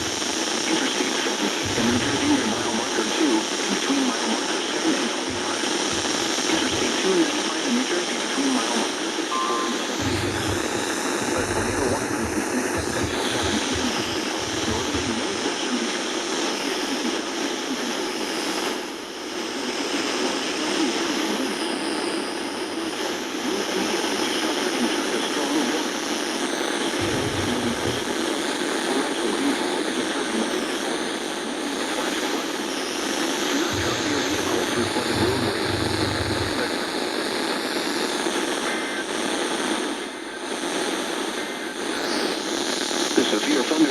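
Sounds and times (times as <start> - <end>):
radio static hiss: 0.0 - 43.9
brief low rumbles: 9.9 - 15.3, 27.0 - 28.2.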